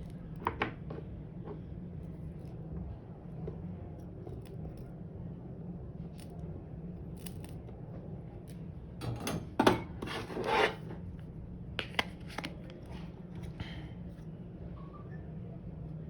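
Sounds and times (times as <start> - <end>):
steady low hum: 0.0 - 16.0
scraping rub: 10.0 - 11.0.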